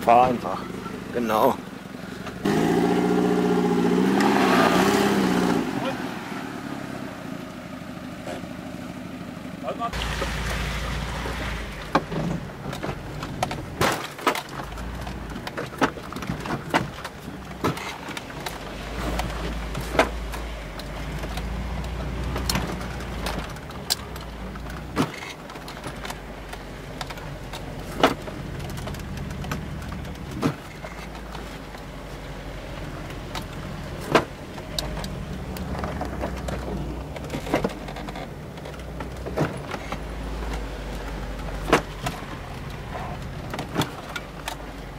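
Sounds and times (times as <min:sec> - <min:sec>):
van engine at low revs: 0:00.0 - 0:44.9
body knocks and rattles: 0:11.2 - 0:44.9.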